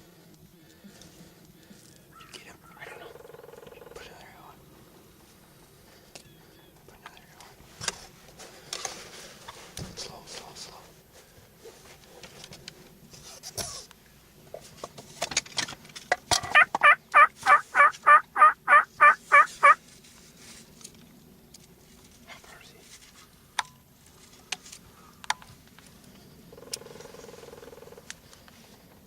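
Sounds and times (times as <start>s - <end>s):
turkey yelping: 16.4s - 19.8s.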